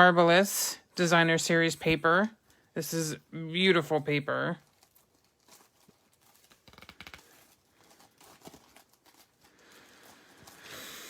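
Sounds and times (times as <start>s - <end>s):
paper rustling and tapping: 5.8s - 9.0s.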